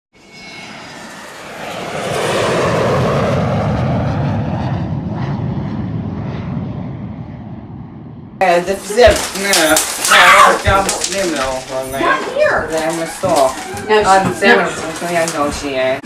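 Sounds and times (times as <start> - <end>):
aircraft engine passing overhead: 0.2 - 16.0.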